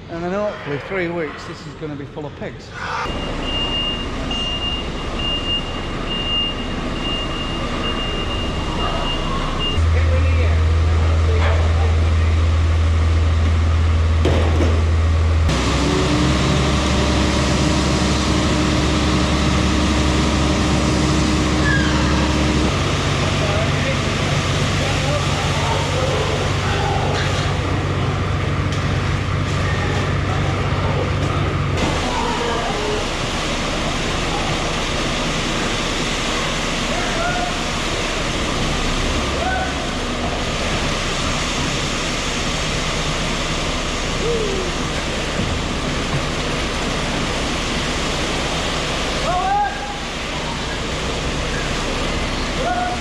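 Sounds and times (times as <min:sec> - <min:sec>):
machine rumbling: 0:00.0 - 0:49.3
reversing alarm beeping: 0:02.8 - 0:09.9
vehicle engine running: 0:03.1 - 0:53.0.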